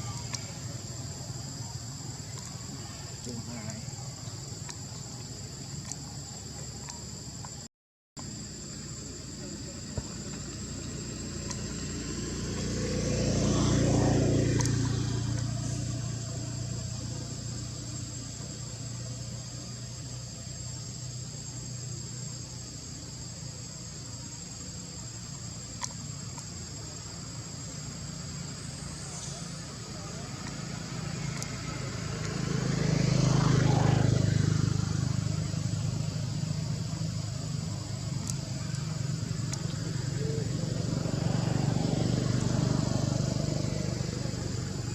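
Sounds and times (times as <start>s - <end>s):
motor vehicle passing by: 9.0s - 19.9s, 26.8s - 44.9s
faint clicks: 25.6s - 26.6s, 38.2s - 39.8s.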